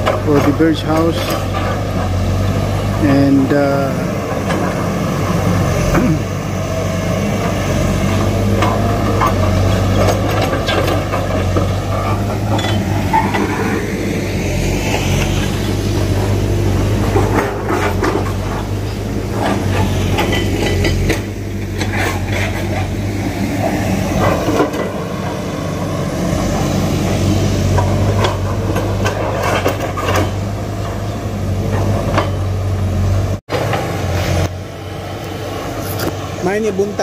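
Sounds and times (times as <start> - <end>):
diesel engine running under load: 0.0 - 37.0
metallic clanks and knocks: 8.6 - 13.6, 19.3 - 22.9.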